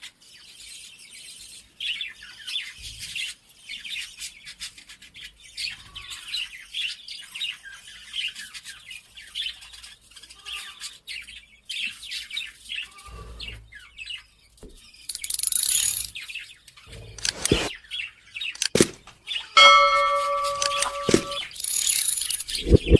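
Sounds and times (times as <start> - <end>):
small birds chirping: 0.0 - 22.9
sharp clicks: 17.2 - 17.7, 18.6 - 19.2, 20.0 - 22.9
steady pitched tone: 19.6 - 21.5.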